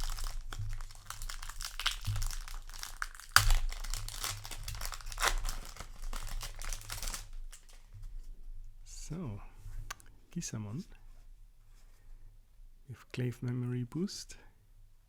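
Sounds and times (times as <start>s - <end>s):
foil pack tearing: 0.0s - 7.9s
foil pack crinkling: 0.0s - 8.1s.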